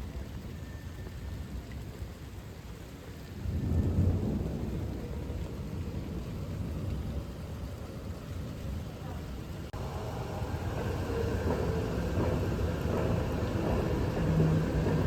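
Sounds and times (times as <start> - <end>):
thunder rumbling: 3.2 - 15.0.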